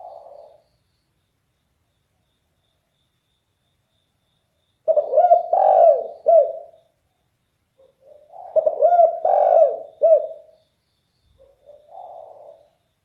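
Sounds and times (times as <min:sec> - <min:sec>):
dove cooing: 0:00.0 - 0:00.6, 0:04.9 - 0:06.8, 0:07.8 - 0:10.6, 0:11.4 - 0:12.8.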